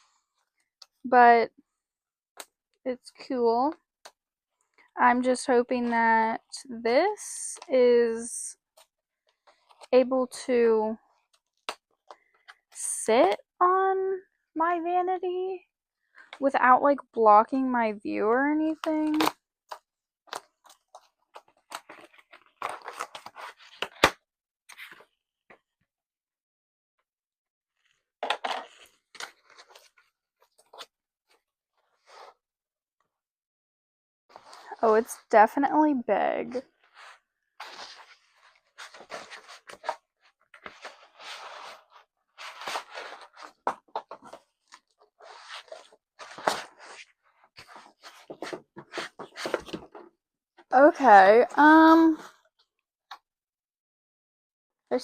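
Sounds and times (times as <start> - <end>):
packaging rustling and scraping: 27.8 - 30.9, 36.8 - 50.0.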